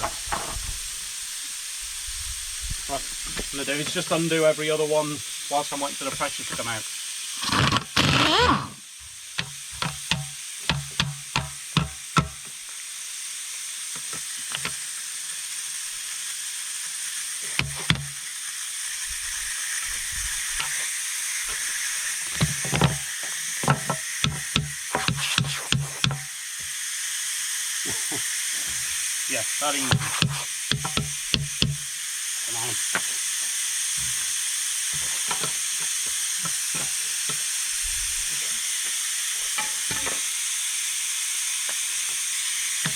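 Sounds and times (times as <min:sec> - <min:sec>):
air hissing out of tyre: 0:00.0 - 0:42.9
sharp knocks on rim nuts: 0:09.4 - 0:12.5, 0:23.6 - 0:26.3, 0:29.9 - 0:31.9.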